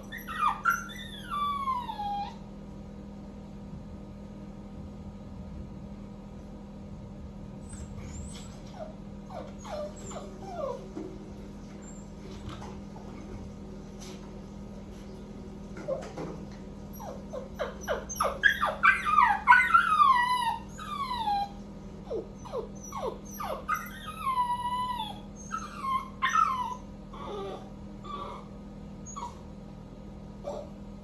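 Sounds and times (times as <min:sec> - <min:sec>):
puppy whining and crying: 0:00.0 - 0:02.5, 0:07.6 - 0:10.9, 0:11.8 - 0:12.4, 0:16.9 - 0:29.6, 0:30.4 - 0:30.8.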